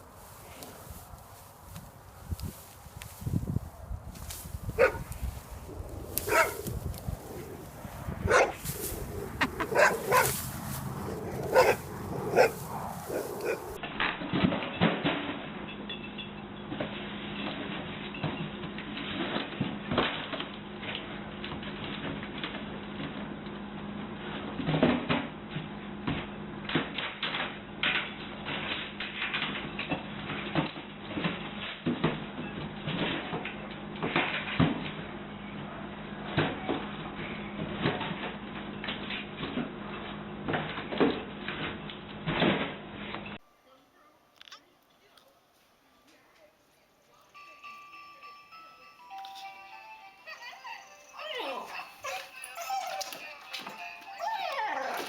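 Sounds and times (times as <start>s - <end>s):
steady low hum: 0.0s - 13.9s
dog barking: 4.8s - 5.1s, 6.2s - 6.7s, 8.2s - 13.8s, 51.2s - 53.2s.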